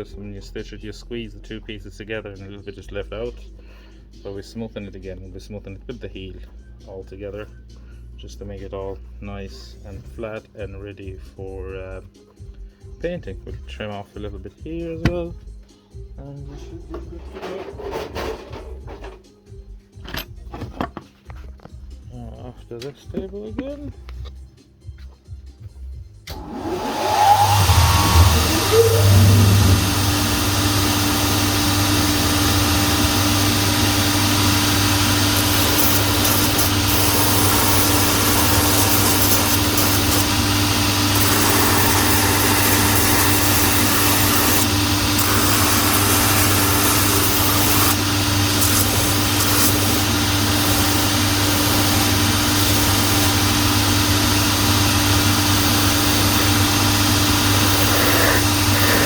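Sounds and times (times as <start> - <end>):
machine humming: 26.3 - 59.0
sanding wheel grinding: 26.4 - 59.0.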